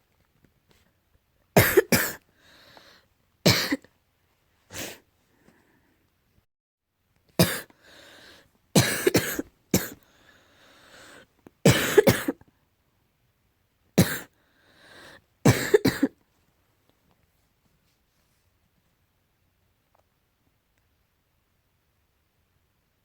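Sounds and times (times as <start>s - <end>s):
person coughing: 1.6s - 2.2s, 3.5s - 3.9s, 7.4s - 7.7s, 8.8s - 10.0s, 11.7s - 12.4s, 14.0s - 14.3s, 15.5s - 16.2s.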